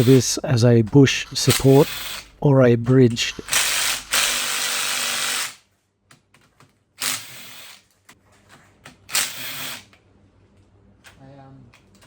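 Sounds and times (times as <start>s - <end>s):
ratchet spinning: 3.4s - 5.6s.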